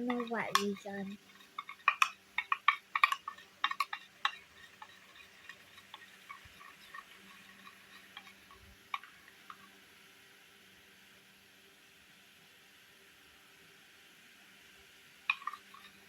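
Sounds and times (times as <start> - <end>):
utensil clinking against a bowl: 0.0 - 9.6, 15.3 - 16.0.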